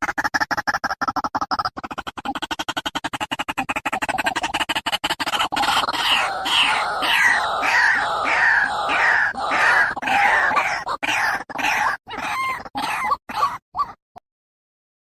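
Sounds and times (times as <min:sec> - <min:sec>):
waterhen clucking pulses: 0:00.0 - 0:14.0
waterhen kru-ak calls: 0:02.2 - 0:14.0.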